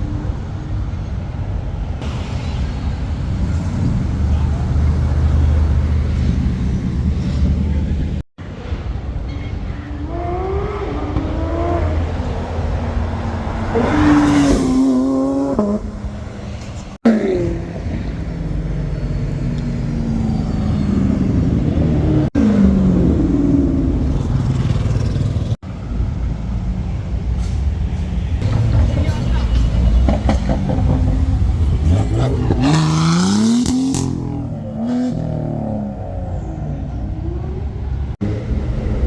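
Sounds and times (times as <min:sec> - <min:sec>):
cars accelerating and passing: 0:09.8 - 0:27.1, 0:28.2 - 0:39.0.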